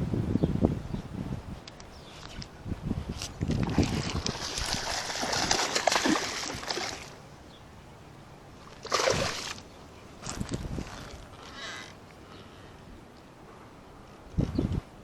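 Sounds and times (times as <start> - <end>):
water splashing and sloshing: 3.1 - 7.4, 8.6 - 12.0.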